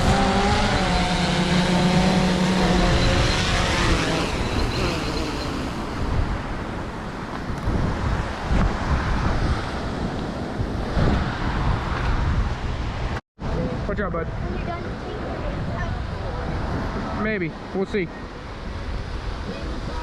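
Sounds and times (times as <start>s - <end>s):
motor hum: 0.0s - 6.1s.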